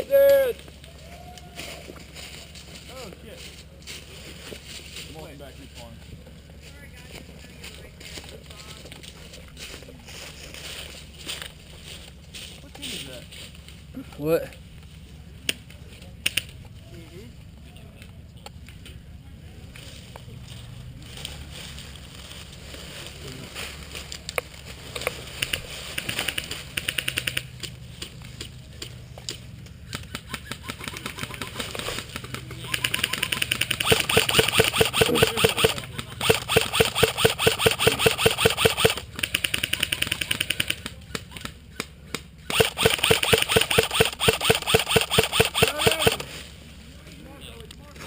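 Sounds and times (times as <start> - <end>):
airsoft guns firing bursts: 30.6 - 41.0, 42.4 - 46.3
single airsoft shots and clicks: 32.1 - 46.3.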